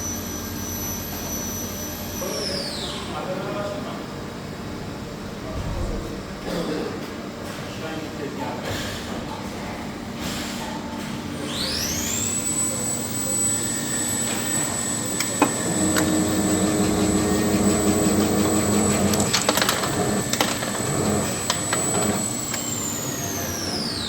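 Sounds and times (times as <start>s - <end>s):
electric motor high whine: 11.5s - 24.0s.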